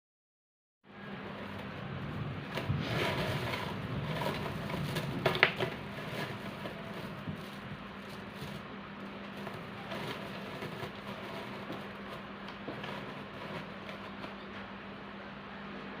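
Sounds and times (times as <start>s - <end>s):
steady low hum: 0.9s - 16.0s
handling clicks and rustles: 2.4s - 14.8s.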